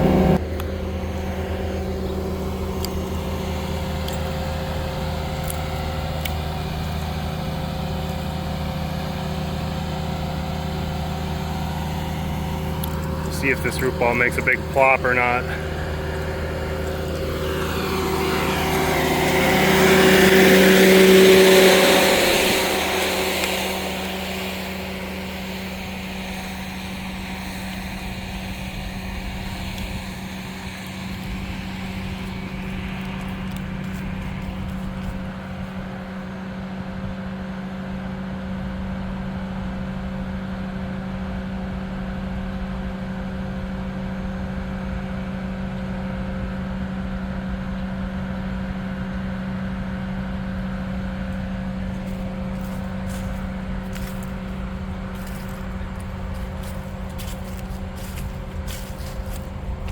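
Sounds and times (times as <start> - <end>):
engine running steadily: 0.0 - 59.9.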